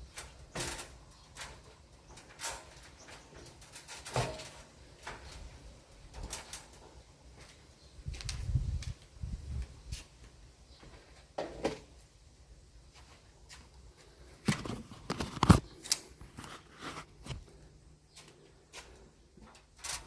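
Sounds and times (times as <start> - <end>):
knocks and scrapes on ceiling: 0.0 - 5.5.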